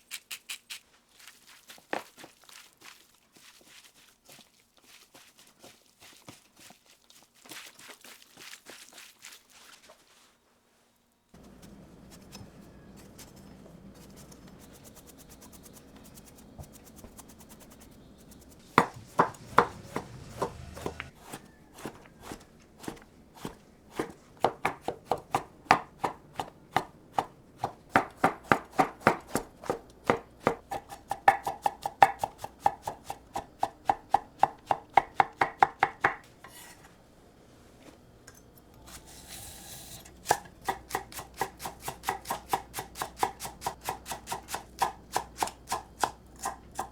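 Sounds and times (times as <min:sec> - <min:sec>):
knife chopping on cutting board: 0:11.4 - 0:36.8, 0:40.2 - 0:46.9.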